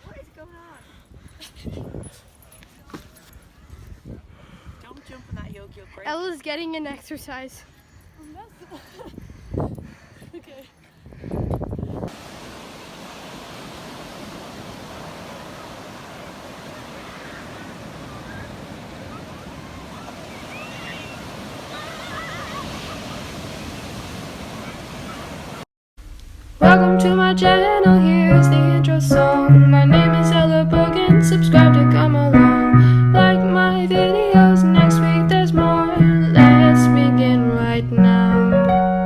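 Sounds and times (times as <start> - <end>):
ocean surf breaking: 12.1 - 25.7.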